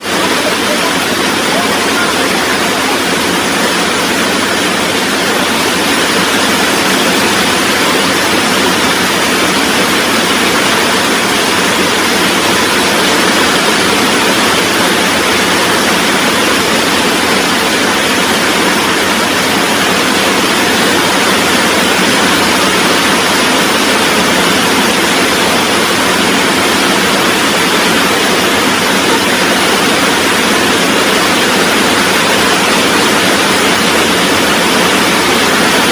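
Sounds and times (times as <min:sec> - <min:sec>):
rain falling: 0:00.0 - 0:35.9.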